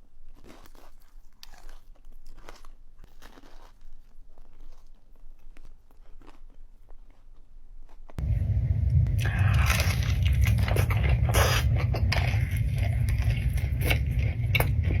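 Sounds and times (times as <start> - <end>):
crunching fried chicken: 0.0 - 8.2, 9.2 - 15.0
loud low rumble: 8.2 - 15.0.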